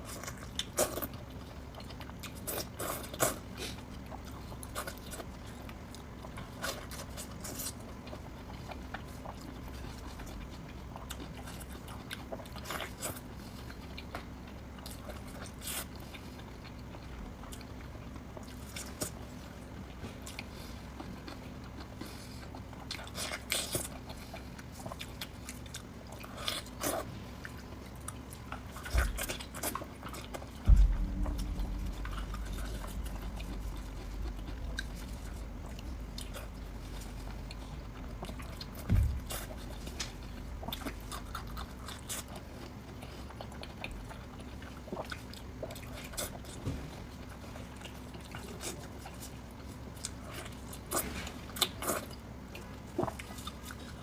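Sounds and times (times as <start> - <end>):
chewing and biting sausage: 0.0 - 54.0
low thumps: 30.6 - 35.6.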